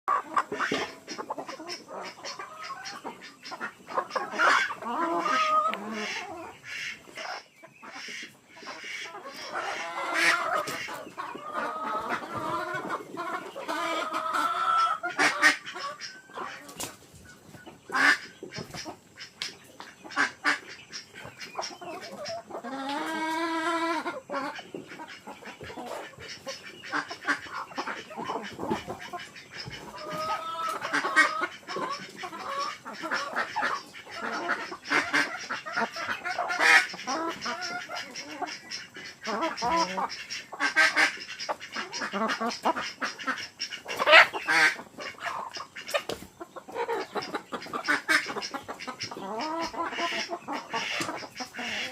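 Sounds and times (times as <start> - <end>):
chickens clucking and squawking: 0.0 - 51.9.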